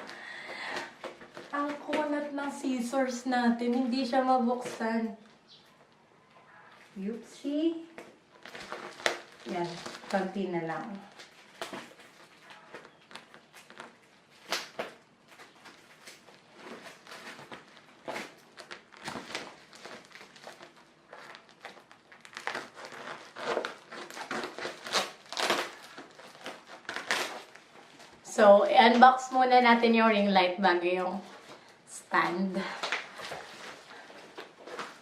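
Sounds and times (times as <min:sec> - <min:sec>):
plastic packaging crinkling: 0:08.1 - 0:28.3, 0:32.6 - 0:35.0.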